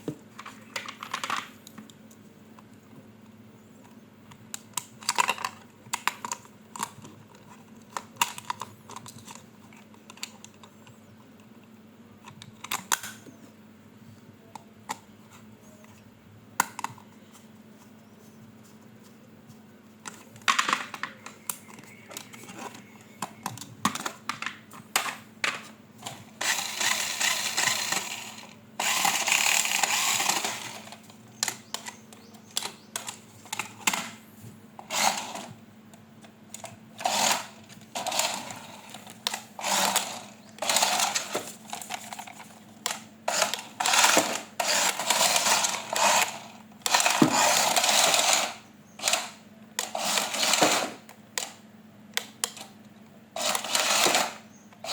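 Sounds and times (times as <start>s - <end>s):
faint steady hum: 0.0s - 54.9s
toy parts clicking and knocking: 4.6s - 10.9s, 20.0s - 34.2s, 36.2s - 51.6s, 53.4s - 54.9s.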